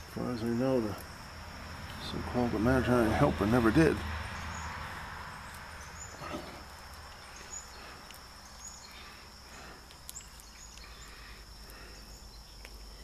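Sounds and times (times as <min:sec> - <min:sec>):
handling ticks: 0:00.0 - 0:02.3, 0:05.4 - 0:13.0
insects trilling: 0:00.0 - 0:13.0.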